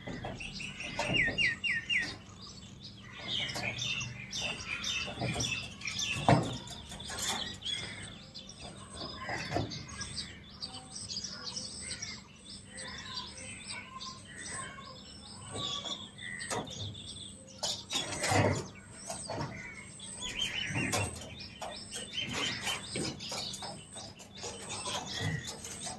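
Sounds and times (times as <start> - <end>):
small birds chirping: 0.0 - 25.9
rustling knocks: 3.2 - 10.0.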